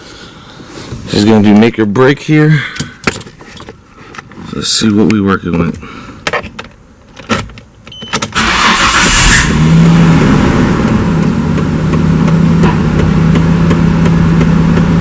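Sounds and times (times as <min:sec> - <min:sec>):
car engine cranking: 0:07.2 - 0:15.0
car engine idling: 0:08.4 - 0:15.0.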